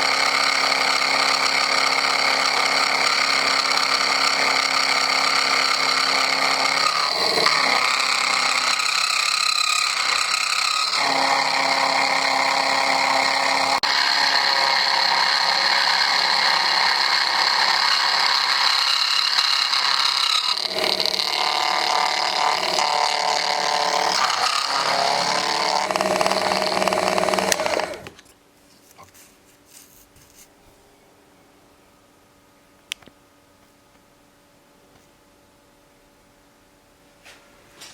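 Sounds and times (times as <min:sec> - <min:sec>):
milling machine running: 0:00.0 - 0:28.1.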